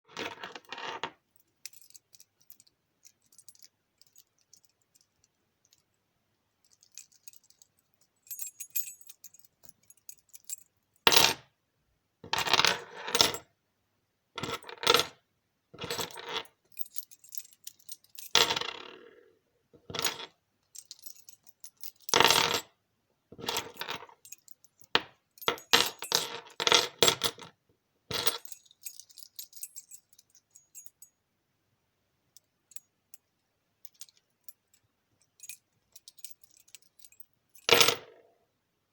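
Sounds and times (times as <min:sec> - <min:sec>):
keys jangling: 0:01.4 - 0:05.9, 0:06.6 - 0:10.7, 0:16.7 - 0:18.3, 0:20.8 - 0:22.1, 0:28.1 - 0:31.1, 0:33.8 - 0:37.7.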